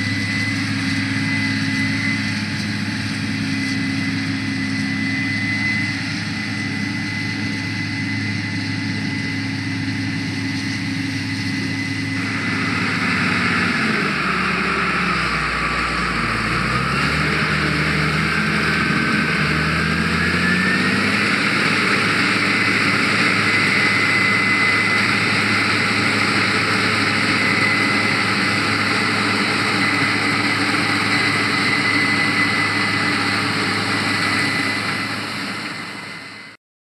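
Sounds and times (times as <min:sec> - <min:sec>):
combine harvester engine hum: 0:00.0 - 0:36.6
rushing noise: 0:10.4 - 0:36.6.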